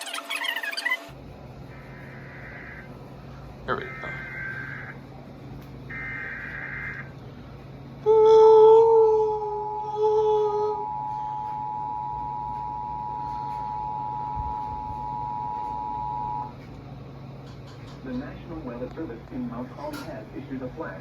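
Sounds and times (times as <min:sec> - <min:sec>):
low buzzing tone with hiss: 0:01.1 - 0:17.7
two-tone alarm: 0:03.8 - 0:05.0, 0:05.9 - 0:07.1, 0:10.3 - 0:16.6.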